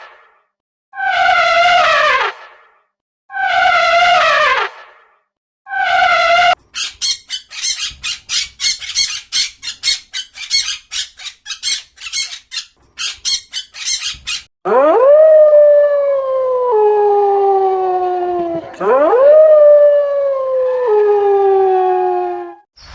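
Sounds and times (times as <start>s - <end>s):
dog yelping: 6.8s - 14.5s
dog howling: 14.7s - 22.6s.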